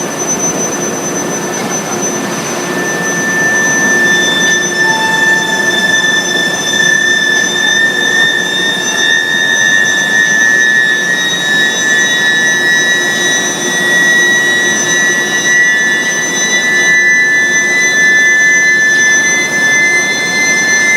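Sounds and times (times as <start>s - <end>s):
high-pitched furnace whine: 0.0s - 20.9s
machine hum: 0.0s - 20.9s.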